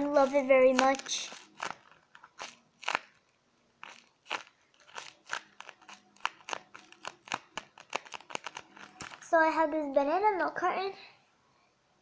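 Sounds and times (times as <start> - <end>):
paper crinkling: 0.0 - 3.2, 3.8 - 9.3.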